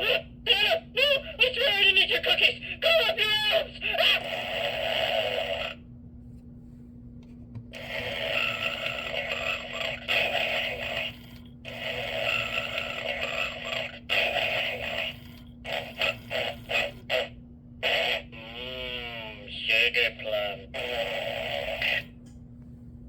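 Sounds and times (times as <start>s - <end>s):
steady low hum: 0.0s - 23.0s
toy speaker playing snores: 4.0s - 5.8s, 7.8s - 22.1s.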